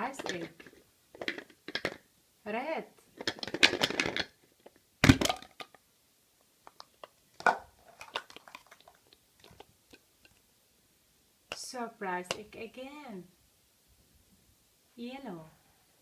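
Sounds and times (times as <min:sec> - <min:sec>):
plastic egg crinkling and cracking: 0:00.1 - 0:02.1, 0:03.1 - 0:05.9, 0:06.5 - 0:10.4
small clicks and rustles: 0:06.4 - 0:10.4.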